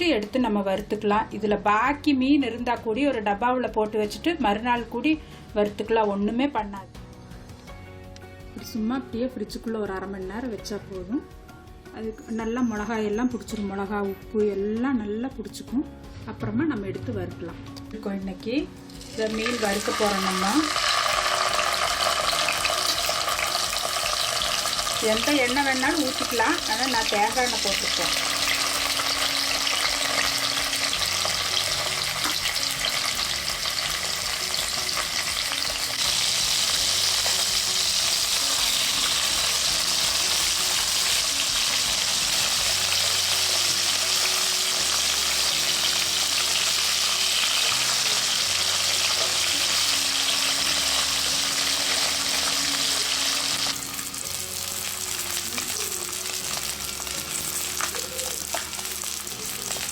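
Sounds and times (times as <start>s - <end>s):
fish sizzling in oil: 18.8s - 59.9s.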